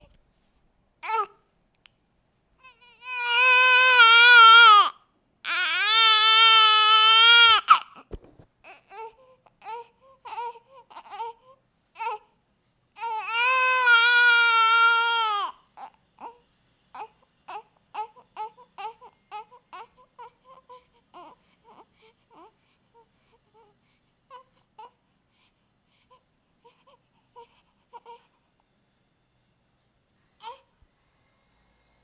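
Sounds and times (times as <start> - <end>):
baby crying: 1.0 - 1.3, 2.6 - 4.9, 5.5 - 7.8, 13.0 - 15.5.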